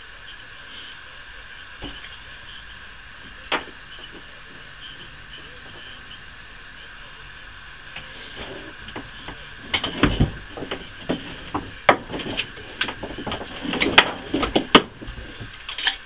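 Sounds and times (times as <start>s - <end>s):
tools and metal clanking: 8.0s - 16.0s.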